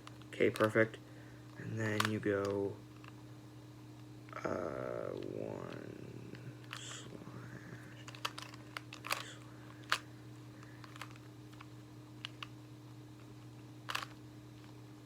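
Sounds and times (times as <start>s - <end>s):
faint steady hum: 0.0s - 15.0s
plastic puzzle clicks: 0.5s - 0.8s, 1.9s - 3.1s, 8.0s - 10.0s, 10.6s - 12.5s, 13.9s - 14.2s.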